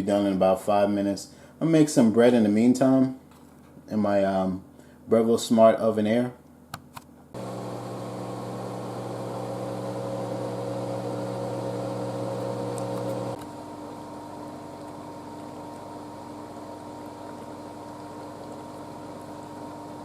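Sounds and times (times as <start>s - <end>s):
appliance fan motor hum: 7.4s - 20.0s.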